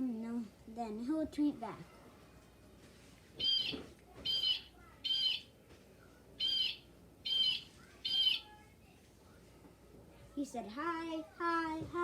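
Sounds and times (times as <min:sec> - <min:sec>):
recorded blue jay calls: 0:03.4 - 0:05.5, 0:06.4 - 0:08.5.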